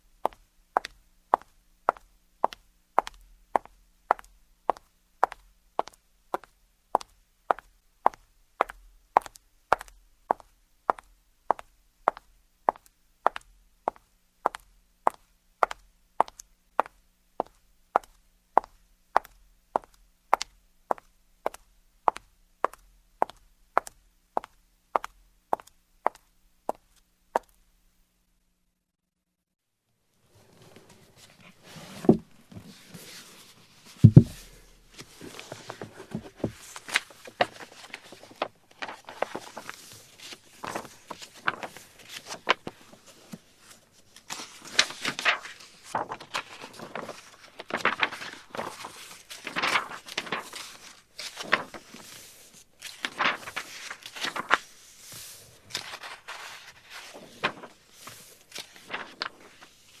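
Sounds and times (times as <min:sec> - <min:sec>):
footsteps scuffing: 0:34.0 - 0:34.4.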